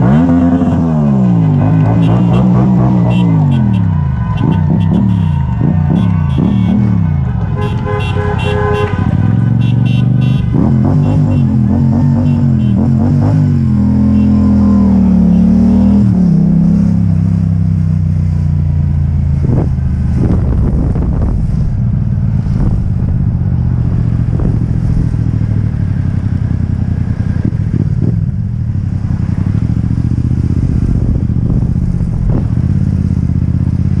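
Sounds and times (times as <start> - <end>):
vehicle engine running: 0.0 - 34.0
short horn honks: 1.9 - 12.9.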